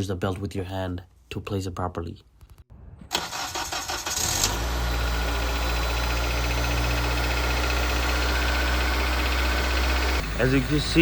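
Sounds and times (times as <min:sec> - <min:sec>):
car engine starting and idling: 0:03.1 - 0:11.0.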